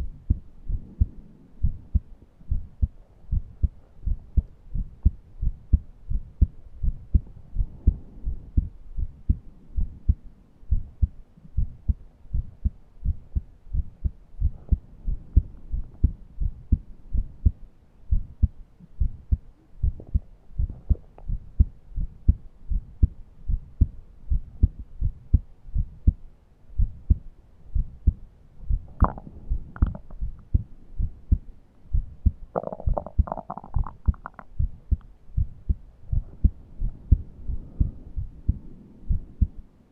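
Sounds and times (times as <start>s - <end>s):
heart beating: 0.0s - 39.7s.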